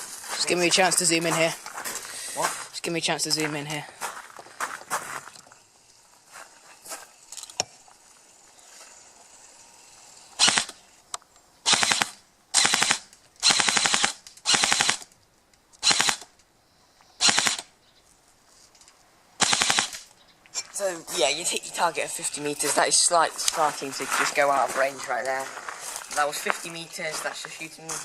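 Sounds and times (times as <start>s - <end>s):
airsoft gun rapid fire: 10.4s - 10.8s, 11.6s - 15.1s, 15.8s - 16.3s, 17.2s - 17.7s, 19.4s - 20.1s.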